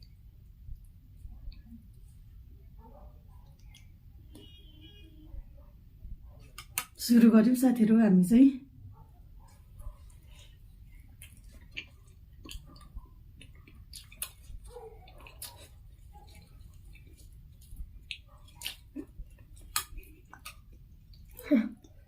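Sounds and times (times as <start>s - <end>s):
person chewing food: 0.0s - 4.5s, 6.4s - 7.0s, 9.4s - 22.0s
mouth clicks and smacks: 3.4s - 4.4s, 6.4s - 7.0s, 10.9s - 22.0s.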